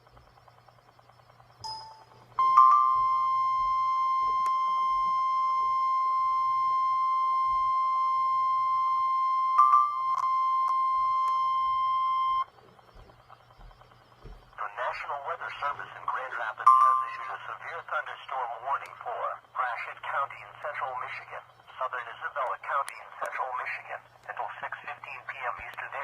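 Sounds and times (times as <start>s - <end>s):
steady alarm beep: 0.0s - 17.5s.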